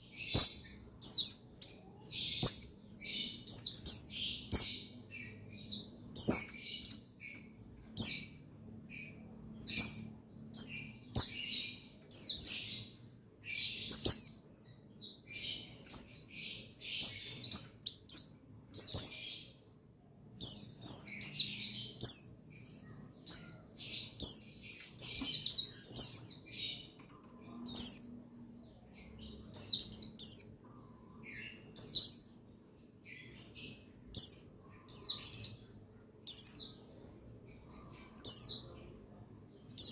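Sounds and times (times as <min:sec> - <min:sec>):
birds chirping high notes: 0:00.0 - 0:19.8.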